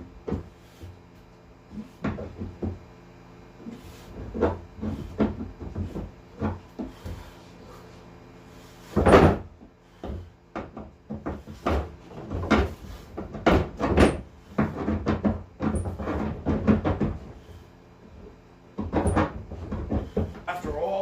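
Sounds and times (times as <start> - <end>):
tools knocking and clunking: 9.0 - 17.3, 18.8 - 20.9.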